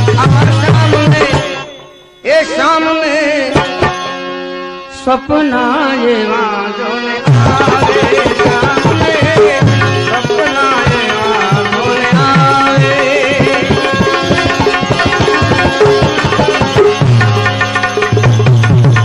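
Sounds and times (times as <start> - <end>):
tabla playing: 0.0 - 4.4, 7.2 - 19.0
wavering melody line: 7.5 - 19.0.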